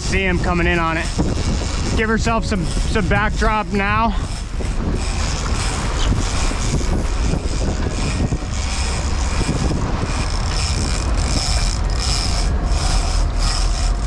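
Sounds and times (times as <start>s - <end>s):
low rumble of boat: 0.0s - 14.0s
fishing reel gears clicking: 4.2s - 14.0s.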